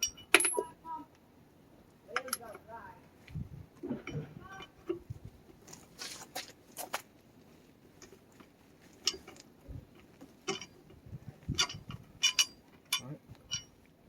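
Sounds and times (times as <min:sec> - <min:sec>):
hand tools clicking and clinking: 0:11.5 - 0:13.8.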